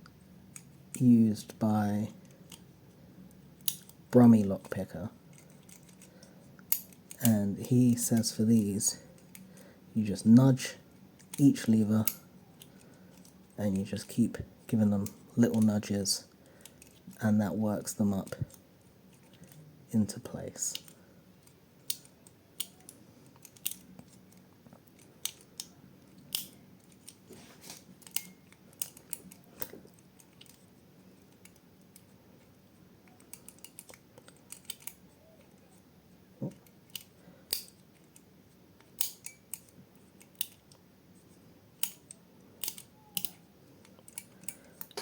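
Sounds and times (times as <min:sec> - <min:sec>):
small metal clicks in padlock: 0:28.0 - 0:29.7, 0:33.1 - 0:35.0, 0:36.6 - 0:38.2, 0:38.8 - 0:40.7, 0:41.8 - 0:45.0.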